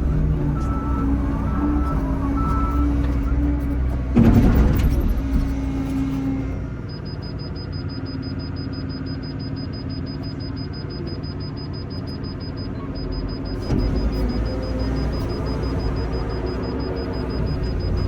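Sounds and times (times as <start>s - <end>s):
excavator diesel engine running: 0.0s - 18.0s
rapid high beeping: 6.9s - 18.0s.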